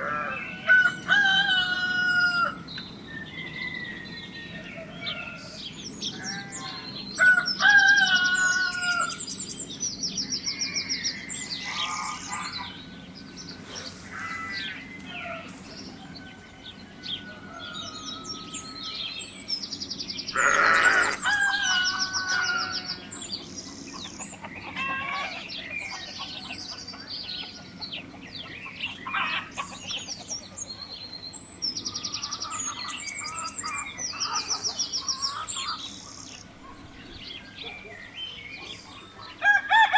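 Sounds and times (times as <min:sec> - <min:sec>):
small birds chirping: 0:00.0 - 0:39.6
chickens clucking: 0:23.7 - 0:31.2, 0:32.0 - 0:38.0.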